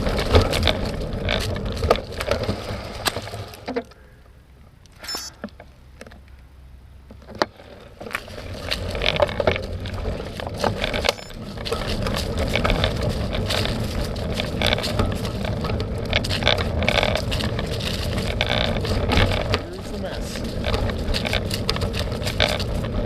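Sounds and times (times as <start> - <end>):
bicycle rattling and clicking: 0.0 - 4.0, 7.0 - 23.0
bicycle tyres crunching on dirt: 0.0 - 23.0.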